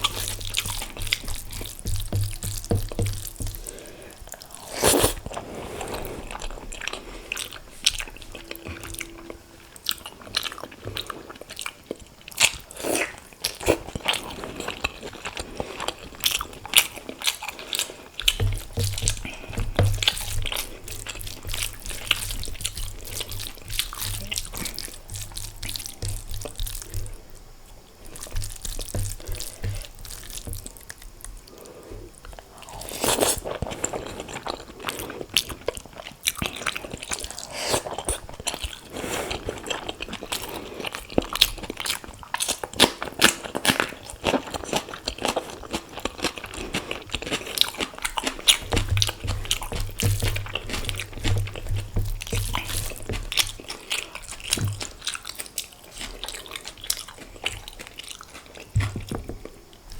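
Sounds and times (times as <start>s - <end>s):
chewing and mouth sounds: 0.0s - 59.9s
crunchy bites: 15.8s - 31.3s, 32.3s - 59.9s.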